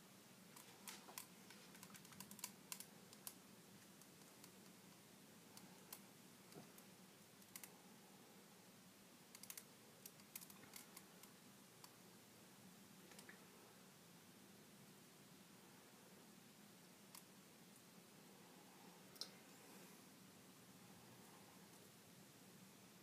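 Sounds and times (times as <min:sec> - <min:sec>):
faint small clicks: 0:13.1 - 0:13.4, 0:19.1 - 0:19.4.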